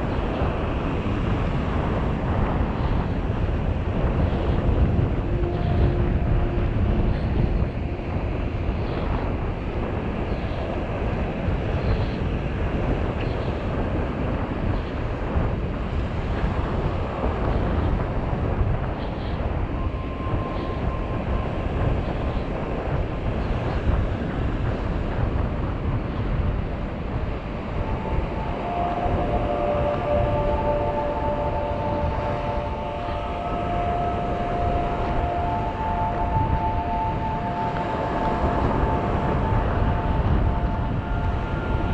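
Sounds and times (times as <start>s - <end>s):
wind buffeting microphone: 0.0s - 41.9s
surf on beach: 11.0s - 41.9s.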